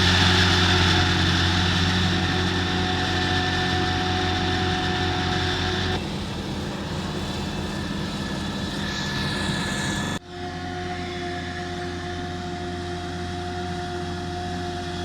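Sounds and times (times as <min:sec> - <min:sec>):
faint rising whine: 0:00.0 - 0:12.6
diesel engines running: 0:00.0 - 0:15.0.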